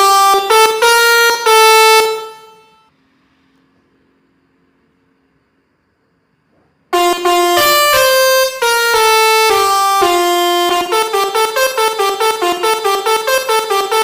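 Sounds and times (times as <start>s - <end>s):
musical bus air horn tune: 0.0s - 2.9s, 7.0s - 14.0s.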